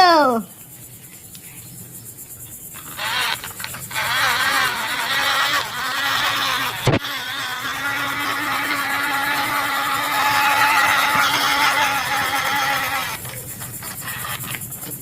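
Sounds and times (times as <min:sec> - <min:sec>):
wavering whine: 0:02.6 - 0:14.6
vehicle engine starting and running: 0:02.8 - 0:13.3.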